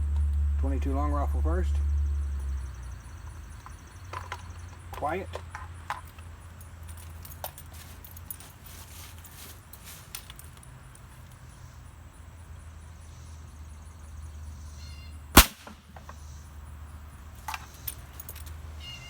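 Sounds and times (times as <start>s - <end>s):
low steady hum: 0.0s - 4.8s
rifle shot: 15.4s - 16.0s.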